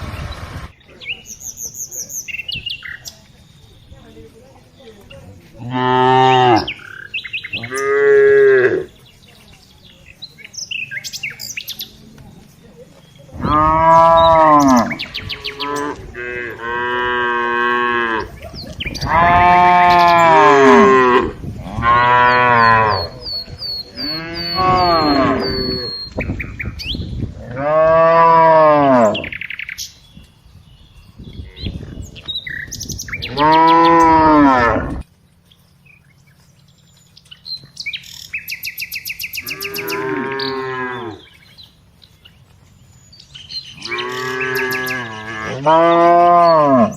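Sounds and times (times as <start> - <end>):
cows mooing: 5.6 - 6.9, 7.6 - 8.9, 13.4 - 18.4, 19.0 - 23.2, 23.9 - 26.1, 27.4 - 29.3, 33.3 - 35.0, 39.4 - 41.4, 43.8 - 46.9.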